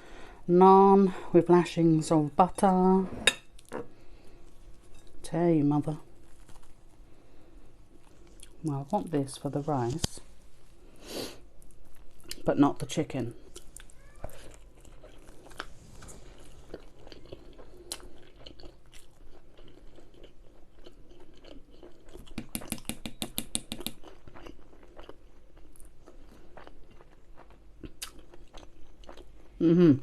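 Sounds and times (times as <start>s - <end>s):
crunchy chews: 13.4s - 22.9s, 23.8s - 29.6s
close chewing and biting: 13.4s - 23.0s, 23.6s - 29.6s.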